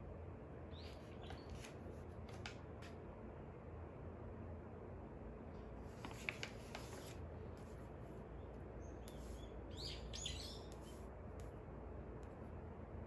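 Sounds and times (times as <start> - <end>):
faint birds chirping: 8.3 - 11.0.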